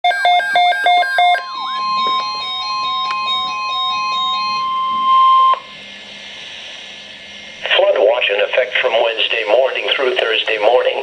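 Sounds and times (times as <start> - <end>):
piercing steady alarm tone: 0.0 - 11.0
rapid electronic beeps: 0.1 - 5.8
stepping electronic melody: 0.5 - 5.6.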